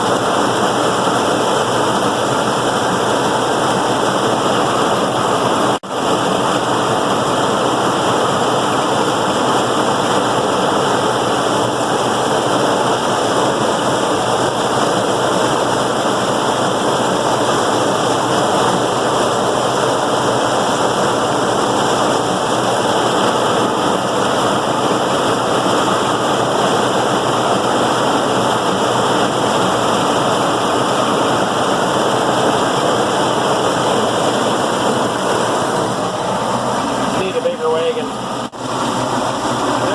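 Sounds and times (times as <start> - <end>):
diesel tractor running under load: 0.0 - 39.9.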